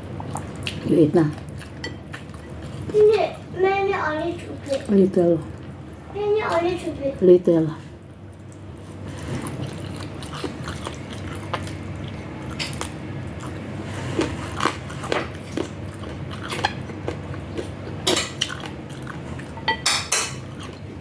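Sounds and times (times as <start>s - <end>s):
chewing and biting food: 0.0s - 3.5s, 8.2s - 19.7s
cutlery clinking on a plate: 19.6s - 20.5s.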